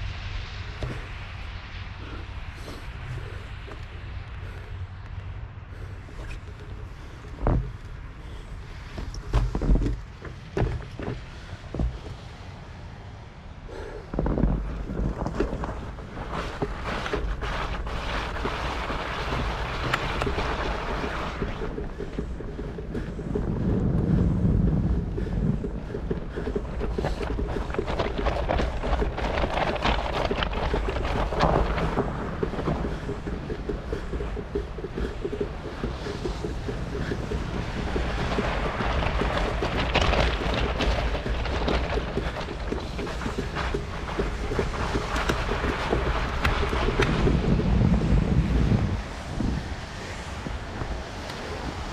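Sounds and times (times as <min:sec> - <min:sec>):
wind buffeting microphone: 0:00.0 - 0:51.9
rapid crackle: 0:13.7 - 0:51.9.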